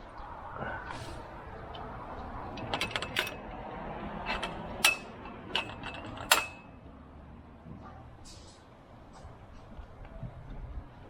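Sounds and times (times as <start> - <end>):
low rumble of tyres rolling: 0.0 - 11.0
bike metallic clicks and creaks: 1.6 - 6.8.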